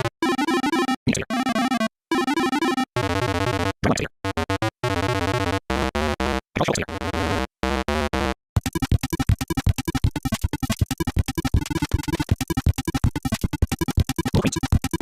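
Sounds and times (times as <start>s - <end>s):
sped-up synthesizer music: 8.6s - 15.0s.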